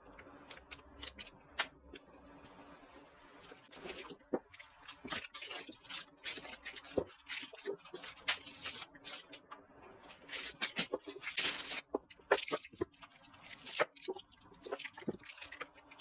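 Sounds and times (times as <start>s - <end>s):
packaging rustling: 5.0s - 9.4s, 10.1s - 15.7s.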